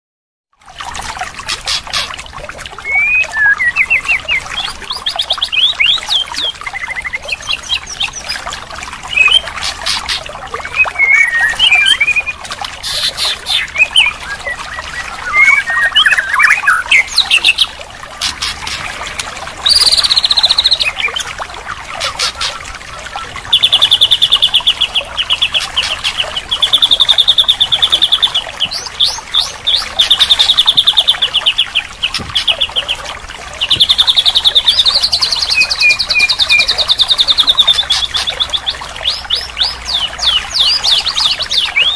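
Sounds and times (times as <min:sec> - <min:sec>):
trickling water: 0:00.6 - 0:41.9
bird singing whistles and trills: 0:02.8 - 0:08.4, 0:09.0 - 0:09.6, 0:10.6 - 0:17.8, 0:19.6 - 0:21.3, 0:23.1 - 0:33.0, 0:33.6 - 0:41.9.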